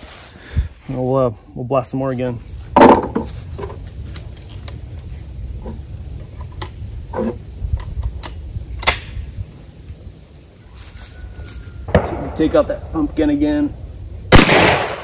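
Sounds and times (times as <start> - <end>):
steady low rumble: 2.2 - 10.6, 11.8 - 15.0.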